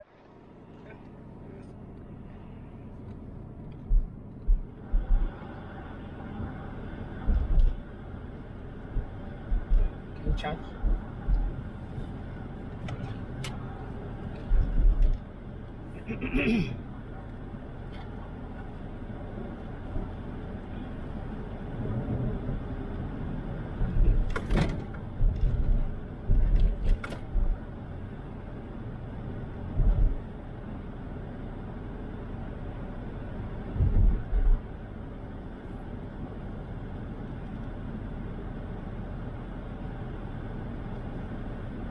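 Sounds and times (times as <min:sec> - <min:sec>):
low road rumble inside car: 0:00.0 - 0:41.9
short deep thumps: 0:03.8 - 0:05.3, 0:07.2 - 0:07.8, 0:08.9 - 0:10.0, 0:10.8 - 0:11.6.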